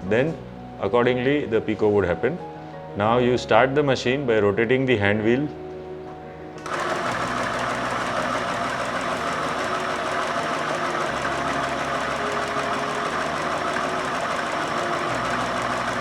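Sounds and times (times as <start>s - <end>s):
electric sewing machine running: 6.6s - 16.0s.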